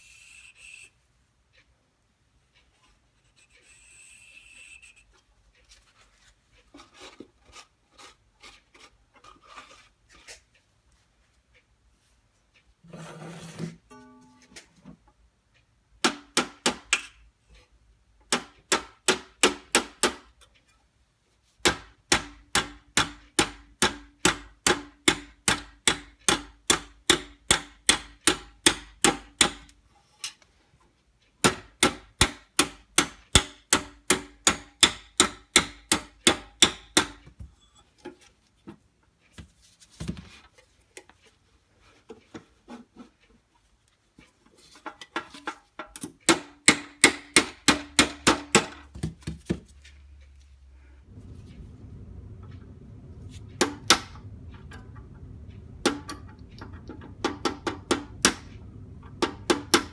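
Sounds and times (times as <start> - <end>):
hammer tapping sheet metal: 16.0 - 17.2, 18.3 - 20.4, 21.6 - 29.7, 31.4 - 37.3, 46.3 - 49.3, 53.3 - 59.9.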